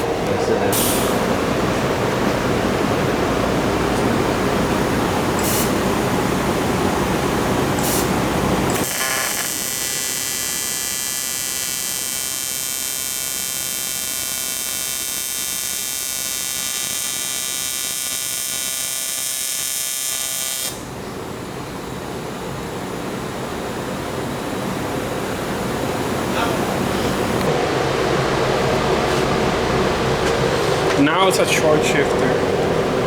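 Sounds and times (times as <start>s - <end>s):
electric grinder whining: 8.8s - 14.1s.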